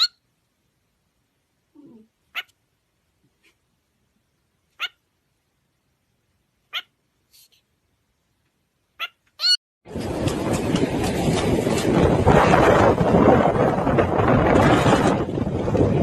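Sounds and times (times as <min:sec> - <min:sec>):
kitten mewing: 0:01.7 - 0:02.6.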